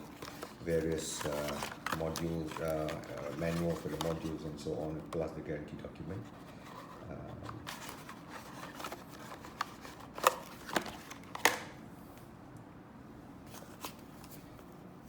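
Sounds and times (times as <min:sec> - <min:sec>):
paper and cardboard rustling: 0:00.0 - 0:05.4, 0:06.1 - 0:11.6.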